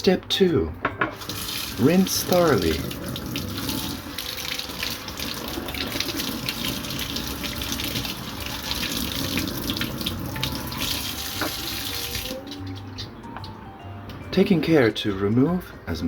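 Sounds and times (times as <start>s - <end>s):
tap water running and splashing: 1.1s - 12.9s.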